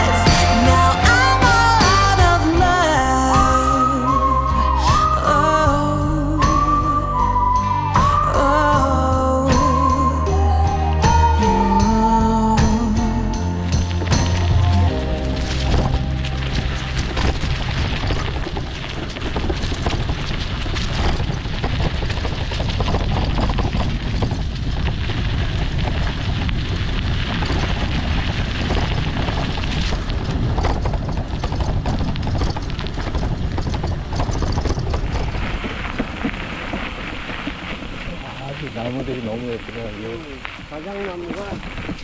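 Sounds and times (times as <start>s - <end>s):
wind rumbling on microphone: 0.0s - 42.0s
bike rattling: 11.9s - 38.0s.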